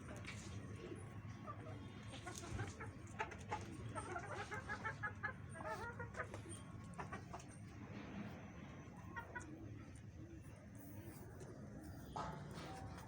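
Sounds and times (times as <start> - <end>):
chickens clucking: 1.4 - 7.9, 8.9 - 10.4.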